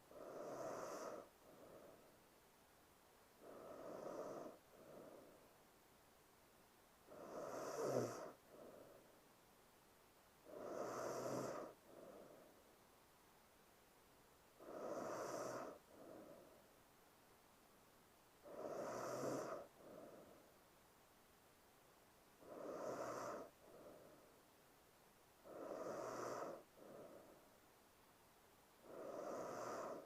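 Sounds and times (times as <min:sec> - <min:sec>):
woman snoring: 0:00.0 - 0:02.1, 0:03.4 - 0:05.4, 0:07.1 - 0:09.0, 0:10.4 - 0:12.5, 0:14.6 - 0:16.5, 0:18.4 - 0:20.4, 0:22.4 - 0:24.2, 0:25.4 - 0:27.4, 0:28.8 - 0:30.0.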